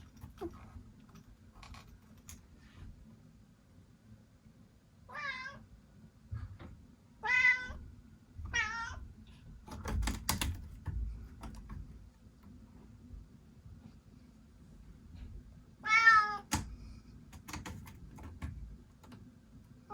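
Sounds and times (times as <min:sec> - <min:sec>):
young cat meowing: 0:05.1 - 0:05.6, 0:07.2 - 0:07.8, 0:15.8 - 0:16.5
sharp clicks and knocks: 0:09.6 - 0:12.1.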